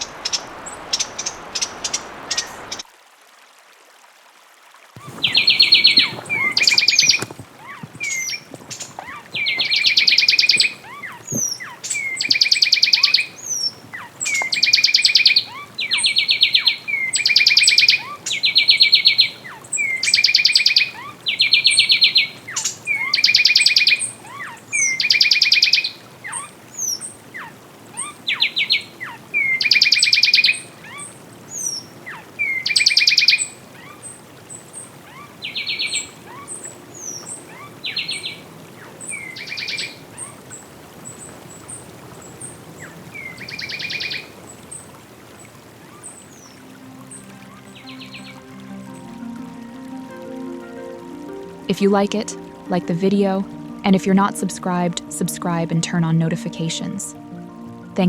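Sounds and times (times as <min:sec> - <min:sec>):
wren singing trills: 0:05.0 - 0:33.6.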